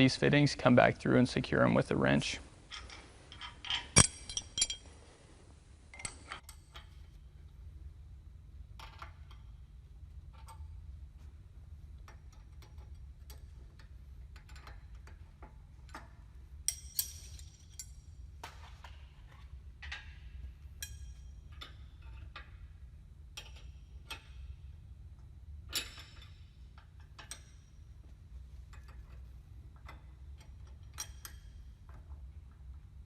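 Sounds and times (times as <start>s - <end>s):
low steady hum: 0.0s - 33.0s
wrench clicking on metal fittings: 12.0s - 18.0s, 28.7s - 32.1s.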